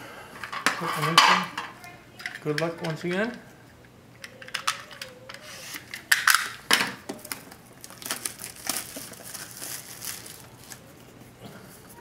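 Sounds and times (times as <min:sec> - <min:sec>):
plastic wrapping crackling: 0:04.4 - 0:11.1.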